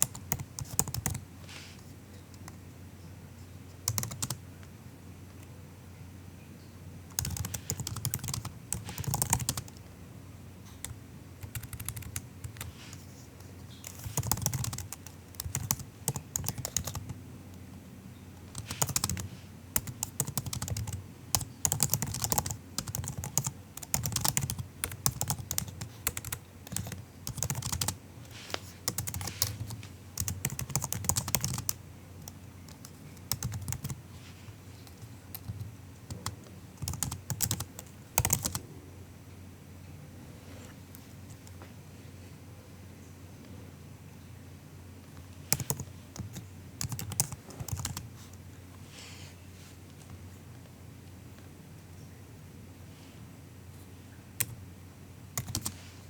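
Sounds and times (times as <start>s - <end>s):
laptop keyboard typing: 0.0s - 1.2s, 3.8s - 4.4s, 7.1s - 9.9s, 10.7s - 17.2s, 18.4s - 34.0s, 34.8s - 38.6s, 45.5s - 48.3s, 54.4s - 54.6s, 55.3s - 55.8s.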